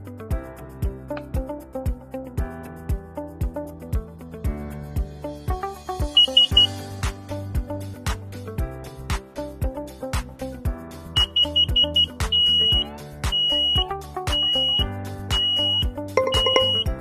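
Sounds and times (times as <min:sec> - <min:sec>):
background music: 0:00.0 - 0:17.0
smoke alarm beeping: 0:06.1 - 0:06.8, 0:11.2 - 0:16.9.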